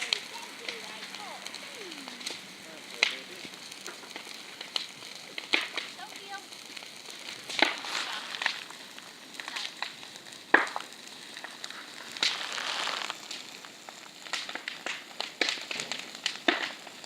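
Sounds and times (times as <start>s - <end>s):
bonfire crackling and popping: 0.0s - 17.0s
short hiss: 7.6s - 8.6s.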